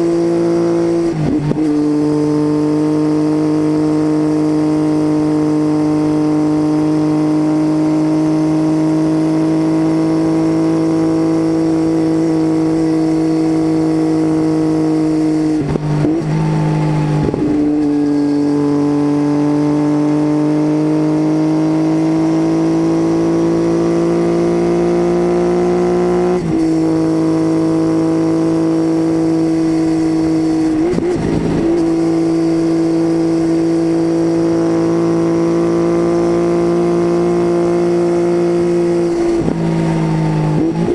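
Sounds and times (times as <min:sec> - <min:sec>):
motorcycle engine drone: 0:00.0 - 0:40.9.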